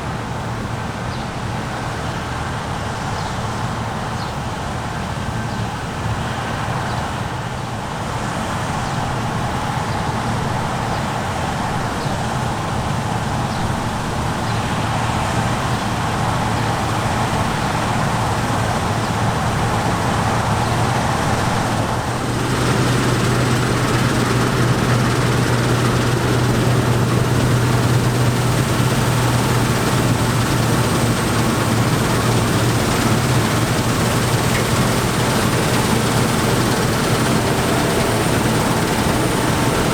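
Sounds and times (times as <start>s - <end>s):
diesel engines running under load: 8.2s - 39.9s
steady low hum: 21.6s - 39.9s.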